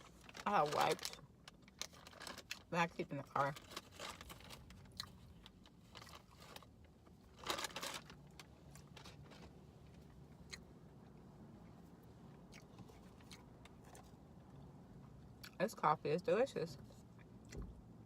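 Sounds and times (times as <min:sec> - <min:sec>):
low steady hum: 0:00.0 - 0:18.0
crunching: 0:03.6 - 0:10.6
chewing and mouth sounds: 0:04.9 - 0:05.3, 0:08.7 - 0:15.6.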